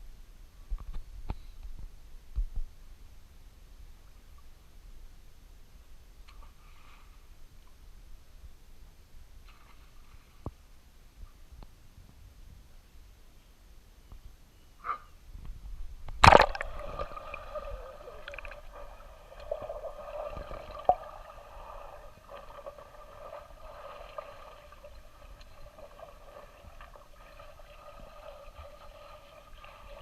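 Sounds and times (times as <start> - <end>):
water gurgling and sloshing: 15.8 - 30.0.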